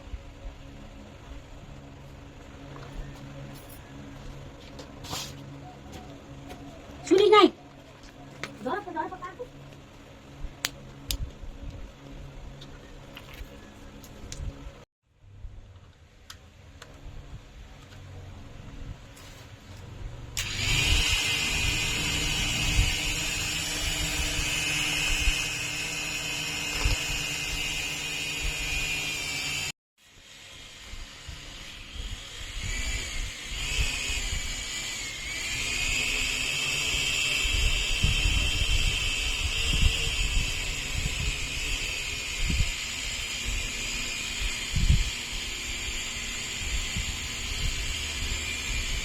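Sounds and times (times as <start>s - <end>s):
small fan motor whining: 16.7s - 49.0s.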